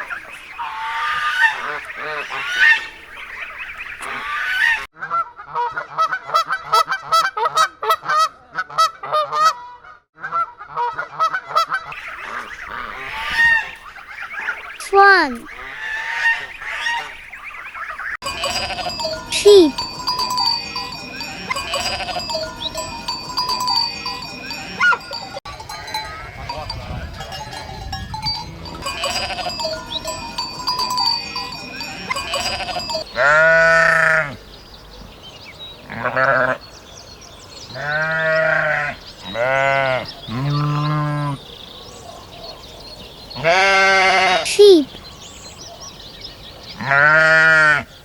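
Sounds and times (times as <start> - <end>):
sheep bleating: 18.2 - 19.9, 21.4 - 25.1, 28.8 - 30.0, 31.8 - 34.4, 37.7 - 41.4, 43.4 - 44.5, 46.8 - 47.8
steady ringing tones: 18.2 - 33.2.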